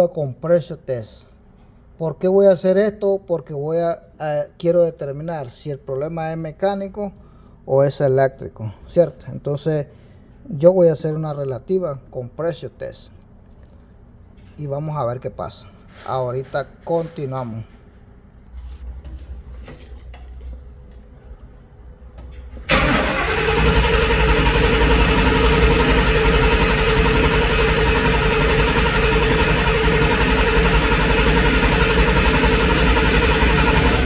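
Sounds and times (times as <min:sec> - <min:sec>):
car engine running: 0:18.8 - 0:34.0
engine cranking by starter: 0:22.1 - 0:34.0.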